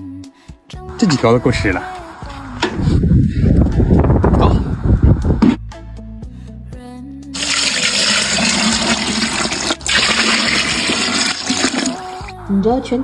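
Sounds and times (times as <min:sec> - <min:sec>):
water rushing and splashing: 0:07.4 - 0:12.3.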